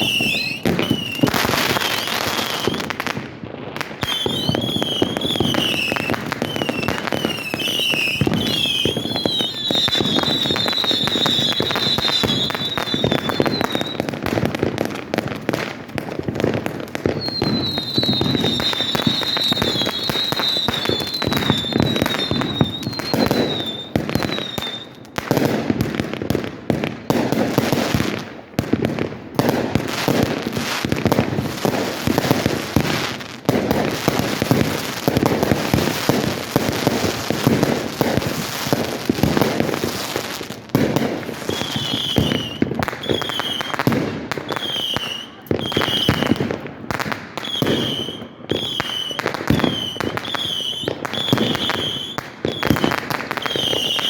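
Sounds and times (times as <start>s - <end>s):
fireworks bangs and crackling: 0.0s - 54.0s.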